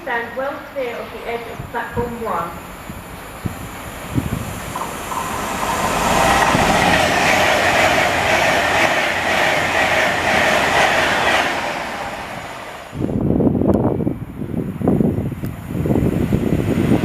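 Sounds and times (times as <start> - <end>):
train passing on rails: 0.0 - 17.0
wheels clattering over rail joints: 4.1 - 12.4.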